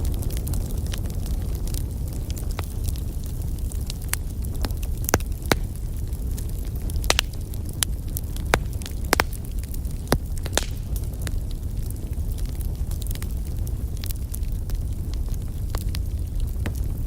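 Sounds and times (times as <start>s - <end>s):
wood fire crackling and popping: 0.0s - 17.0s.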